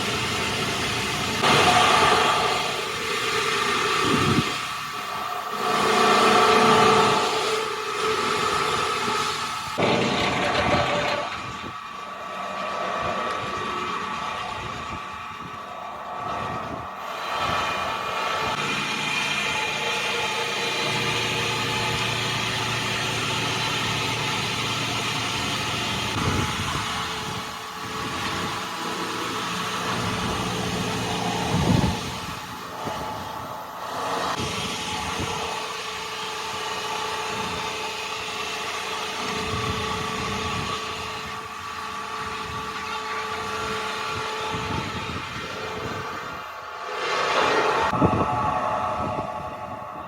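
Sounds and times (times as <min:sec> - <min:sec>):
heavy vehicle engine running: 0:00.0 - 0:50.0.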